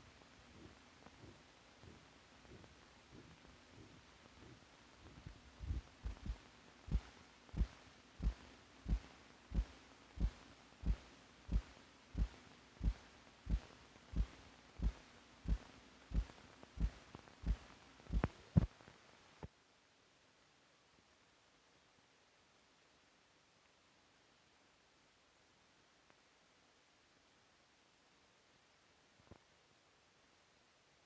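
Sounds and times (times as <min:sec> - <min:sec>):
heartbeat thumps: 0:00.0 - 0:18.7
faint hiss: 0:00.0 - 0:31.0.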